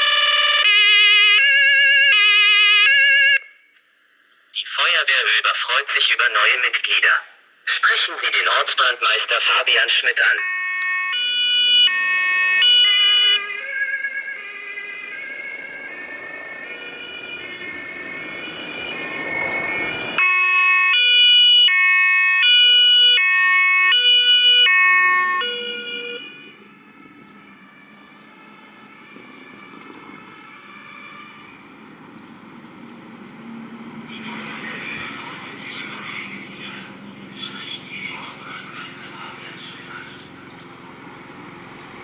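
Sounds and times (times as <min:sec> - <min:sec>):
two-tone siren: 0:00.0 - 0:03.8, 0:09.3 - 0:32.1, 0:33.4 - 0:42.0
vehicle rumble: 0:03.8 - 0:42.0.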